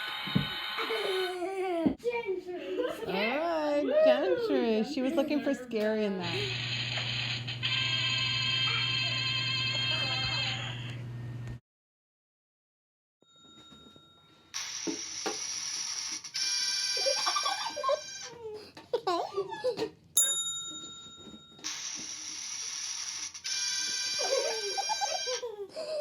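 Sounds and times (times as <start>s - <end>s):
bright bell ding: 20.2s - 21.7s.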